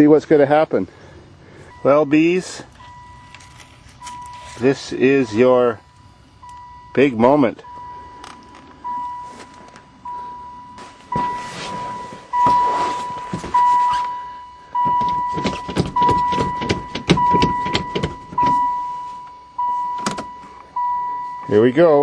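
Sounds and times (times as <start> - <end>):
dashboard warning chime: 1.7 - 22.0
rustling: 2.7 - 4.9, 7.8 - 14.3.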